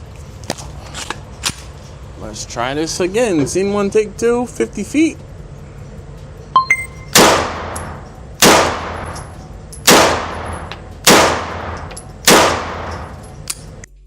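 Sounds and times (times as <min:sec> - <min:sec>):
gunshots with ringing tail: 0:07.1 - 0:09.2, 0:09.9 - 0:13.1.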